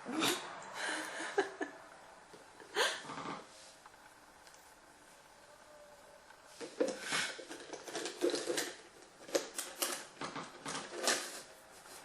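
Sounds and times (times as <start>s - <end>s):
irregular clicking and rustling: 6.3s - 12.0s.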